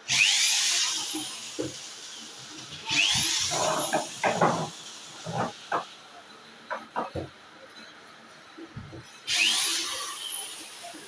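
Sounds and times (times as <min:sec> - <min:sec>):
power drill motor whine: 0:00.1 - 0:01.6, 0:02.9 - 0:04.2, 0:09.3 - 0:11.0.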